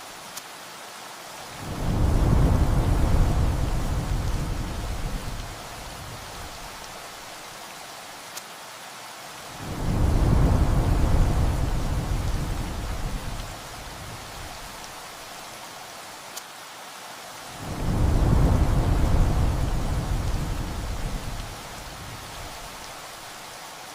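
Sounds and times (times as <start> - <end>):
heavy rain: 0.0 - 23.9
rolling thunder: 1.6 - 6.8, 9.6 - 14.9, 17.6 - 22.9
single raindrop ticks: 8.3 - 8.5, 16.3 - 16.5.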